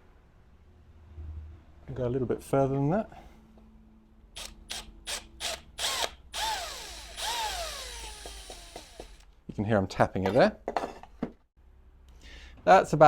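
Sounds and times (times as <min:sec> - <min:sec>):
electric drill whining: 0:04.4 - 0:09.3.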